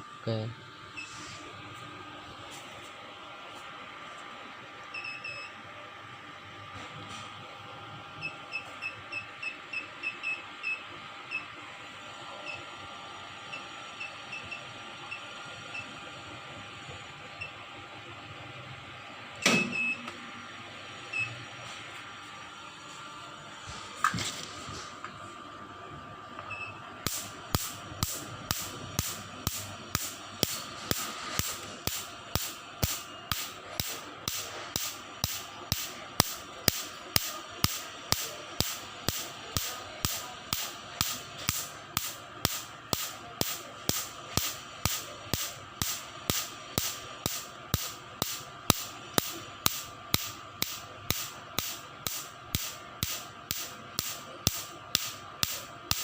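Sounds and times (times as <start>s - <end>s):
steady machine hum: 0.0s - 56.0s
laser machine pulse snaps: 27.0s - 56.0s.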